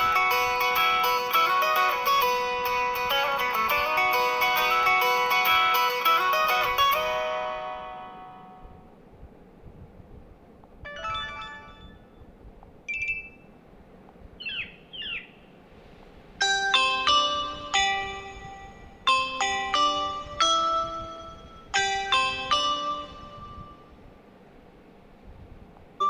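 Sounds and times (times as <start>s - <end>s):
plucked ringtone melody: 0.0s - 8.7s, 10.9s - 12.1s, 12.9s - 13.4s, 16.4s - 23.8s
melodic tone with repeated notes: 0.0s - 8.8s, 10.9s - 12.0s, 16.4s - 23.8s
notification chime: 10.9s - 12.0s, 12.9s - 13.4s
chirping sweeps: 14.4s - 15.6s.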